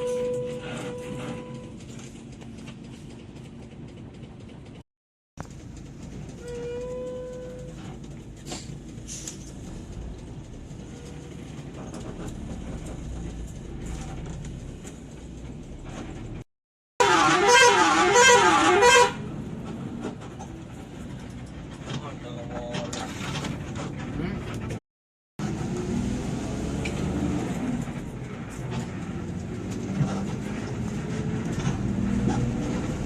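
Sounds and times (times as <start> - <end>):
short horn toot: 0.0 - 1.8, 17.0 - 19.2
warbling multi-tone bus horn: 0.0 - 1.8, 6.4 - 7.9, 17.0 - 19.3
traffic rumble: 0.0 - 4.8, 5.4 - 24.8, 25.4 - 33.0.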